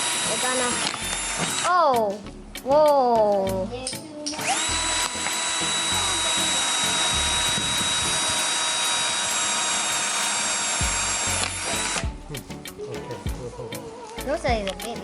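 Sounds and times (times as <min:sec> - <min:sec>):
electric drill whining: 0:00.0 - 0:01.8, 0:04.3 - 0:12.1.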